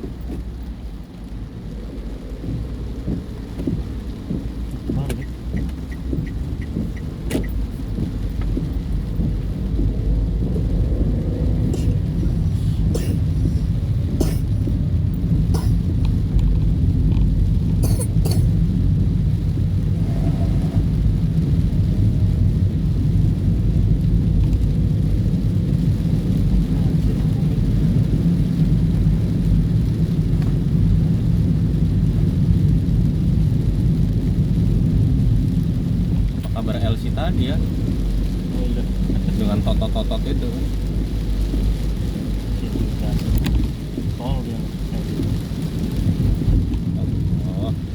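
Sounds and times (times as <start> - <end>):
heavy rain on a car: 0.0 - 47.9
sharp taps: 2.4 - 10.0.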